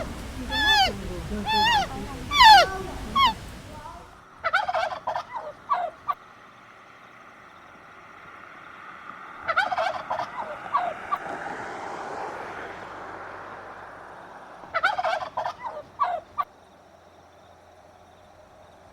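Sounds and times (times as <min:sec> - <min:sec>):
turkey gobbling: 0:00.0 - 0:06.2, 0:09.4 - 0:11.2, 0:14.7 - 0:16.5.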